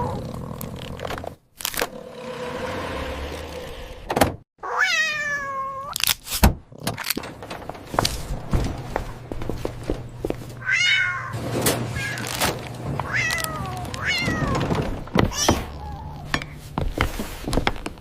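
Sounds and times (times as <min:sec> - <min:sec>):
cat meowing: 0:04.6 - 0:06.0, 0:10.6 - 0:11.4, 0:13.0 - 0:14.7, 0:15.3 - 0:16.3.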